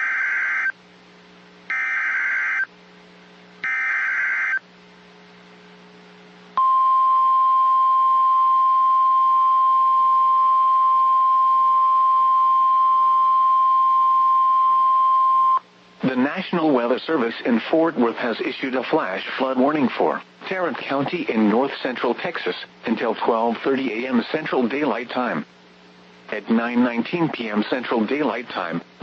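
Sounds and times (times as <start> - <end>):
steady warning alarm tone: 0.0 - 0.8, 1.7 - 2.7, 3.6 - 4.6
buzzing data screech: 1.7 - 2.7, 3.6 - 4.6.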